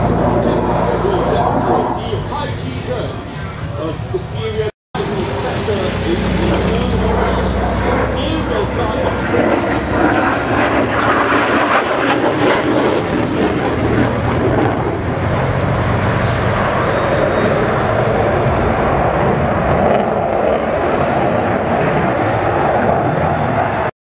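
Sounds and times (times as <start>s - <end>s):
aircraft engine rumble with hiss: 5.0s - 23.8s.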